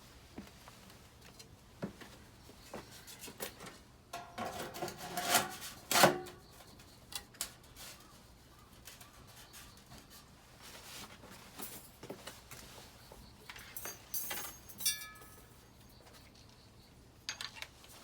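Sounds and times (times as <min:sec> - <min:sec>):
knocks and scraping on metal: 0:03.0 - 0:06.5
ringing metal clank: 0:13.7 - 0:15.5.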